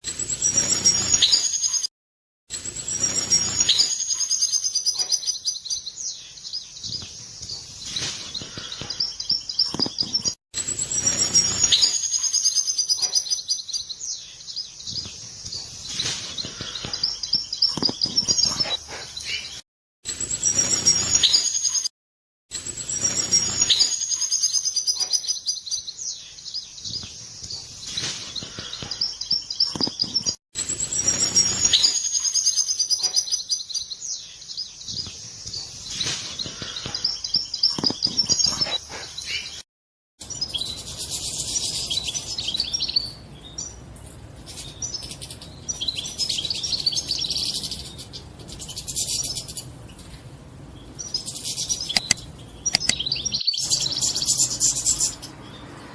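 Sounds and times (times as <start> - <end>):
goldfinch twittering song: 2.6 - 19.6, 40.2 - 43.8, 50.8 - 55.7.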